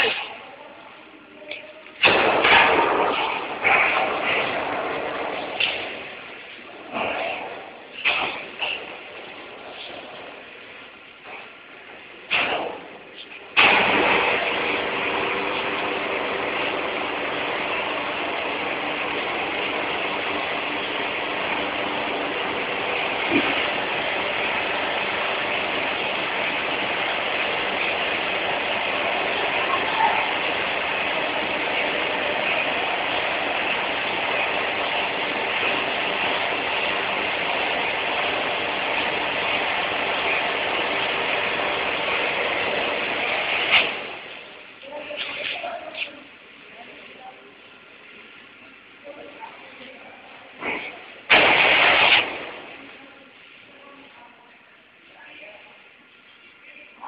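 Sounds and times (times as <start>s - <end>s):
industrial machinery hiss: 50.6s - 52.8s.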